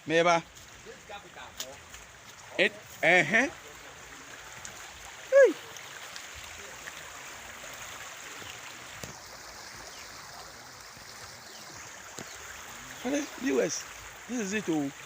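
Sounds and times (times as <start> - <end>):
floodwater rushing: 0.0 - 15.0
person shouting: 5.3 - 5.6.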